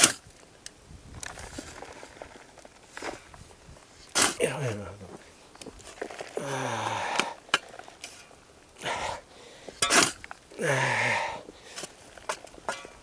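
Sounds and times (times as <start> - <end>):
breathy bursts: 6.3 - 8.0, 8.8 - 9.9, 10.6 - 11.9
man groaning: 6.4 - 7.4, 10.6 - 11.5.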